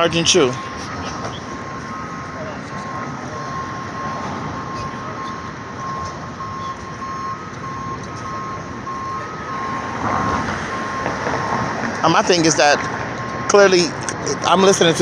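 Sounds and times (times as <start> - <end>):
high electronic beeps: 0.0 - 10.0
street traffic hiss: 0.0 - 15.0.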